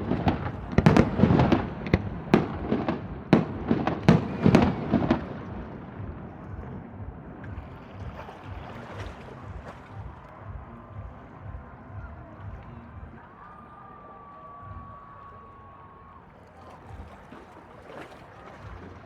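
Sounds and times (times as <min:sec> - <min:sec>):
fireworks bangs and pops: 0:00.0 - 0:06.2
low steady rumble: 0:00.0 - 0:13.2.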